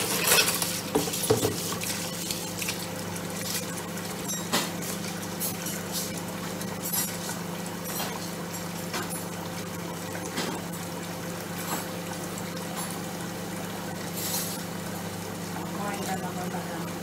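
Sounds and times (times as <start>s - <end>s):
dishes and utensils clinking: 0.0s - 1.9s, 4.2s - 4.8s
microwave oven humming: 0.0s - 17.0s
water splashing in sink: 0.0s - 17.0s.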